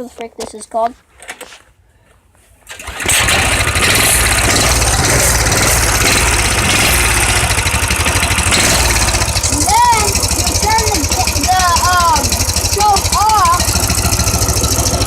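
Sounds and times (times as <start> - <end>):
motorcycle engine starting and idling: 2.6 - 15.0.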